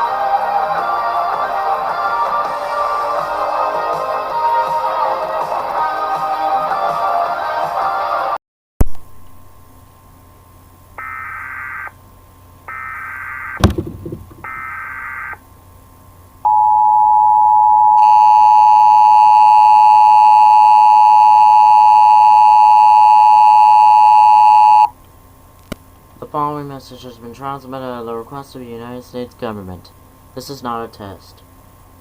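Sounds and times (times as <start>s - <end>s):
low thump: 13.6s - 14.7s
warbling digital header tones: 13.6s - 15.3s
long steady attention tone: 16.4s - 24.9s.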